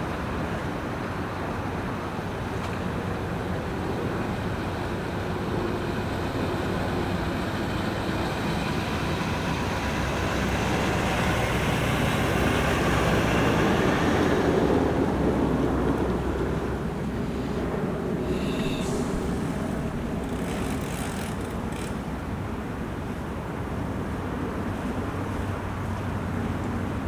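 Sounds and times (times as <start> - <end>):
engine running: 3.9 - 22.5.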